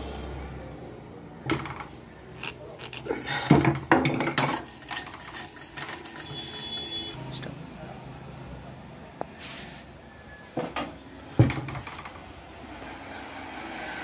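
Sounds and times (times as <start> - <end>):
metal tools clinking and knocking: 1.5 - 6.9.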